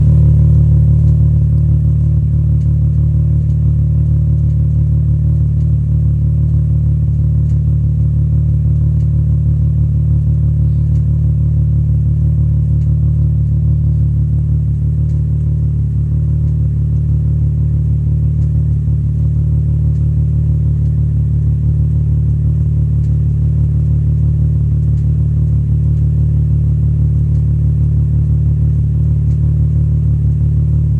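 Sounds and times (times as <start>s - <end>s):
car engine idling roughly: 0.0s - 30.9s.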